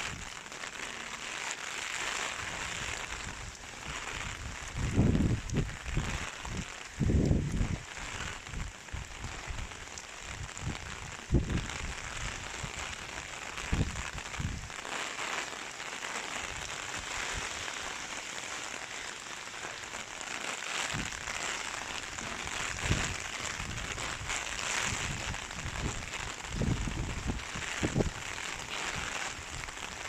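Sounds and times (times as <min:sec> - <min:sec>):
heavy rain falling: 0:00.0 - 0:30.0
wind gusts buffeting microphone: 0:02.4 - 0:14.8, 0:20.9 - 0:21.3, 0:22.1 - 0:29.8.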